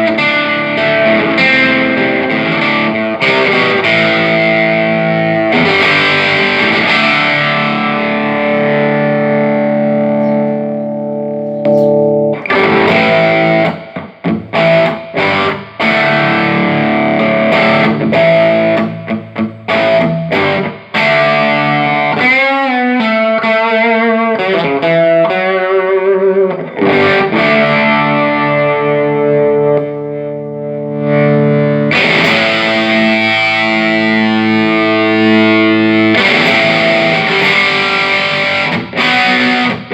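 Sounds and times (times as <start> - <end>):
distorted electric guitar: 0.0 - 39.9.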